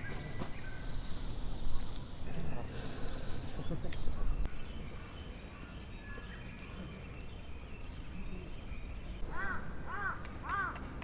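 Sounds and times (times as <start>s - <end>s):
crow cawing: 9.3s - 10.8s.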